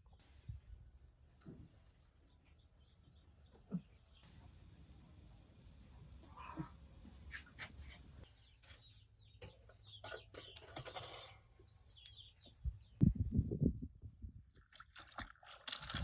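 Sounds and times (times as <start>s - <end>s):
small birds chirping: 1.7s - 13.4s.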